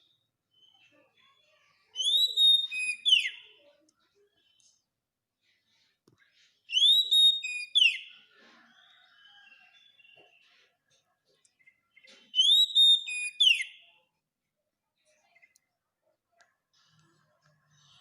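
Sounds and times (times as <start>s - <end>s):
faint bird chirps: 0.0s - 4.9s, 5.7s - 14.2s
bird whistling song: 2.0s - 3.5s, 6.7s - 8.1s, 12.0s - 13.9s.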